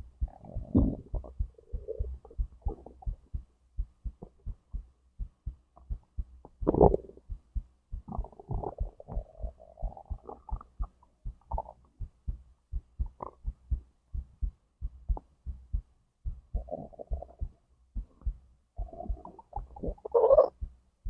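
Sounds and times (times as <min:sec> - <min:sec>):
heartbeat thumping: 0:00.0 - 0:21.0
stomach gurgling: 0:00.2 - 0:03.2, 0:06.6 - 0:07.2, 0:08.0 - 0:11.9, 0:13.0 - 0:13.5, 0:16.6 - 0:17.5, 0:18.2 - 0:20.6.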